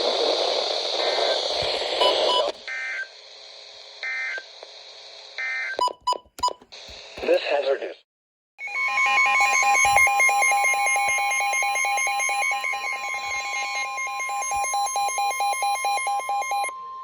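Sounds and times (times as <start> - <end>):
rapid pulsing beep: 8.6 - 16.7
steady warning alarm tone: 8.6 - 17.0.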